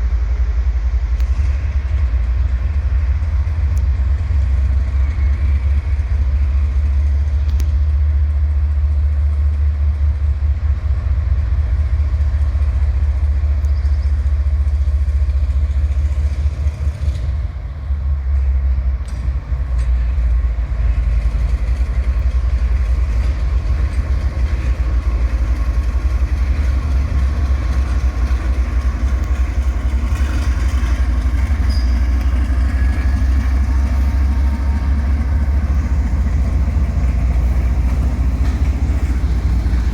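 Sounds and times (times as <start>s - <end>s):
locomotive diesel engines rumbling: 0.0s - 39.9s.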